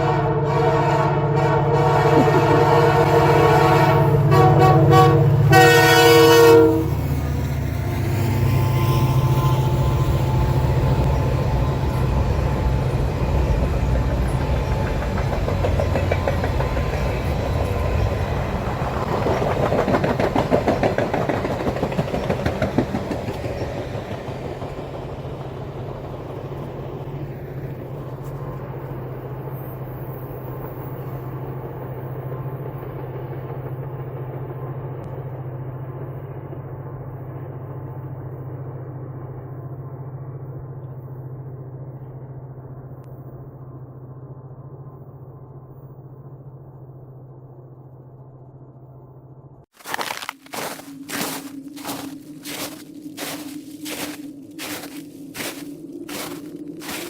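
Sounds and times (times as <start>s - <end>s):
locomotive engine drone: 0.0s - 57.0s
train wheels clattering: 13.9s - 25.4s.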